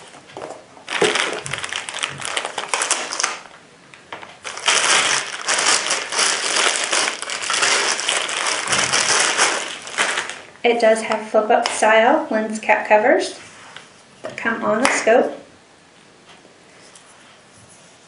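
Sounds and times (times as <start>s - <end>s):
packaging crinkling: 0.4s - 10.6s.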